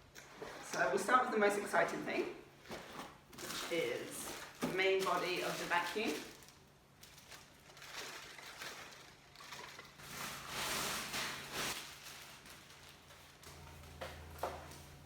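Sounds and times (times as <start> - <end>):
packaging rustling and crinkling: 2.6 - 14.4.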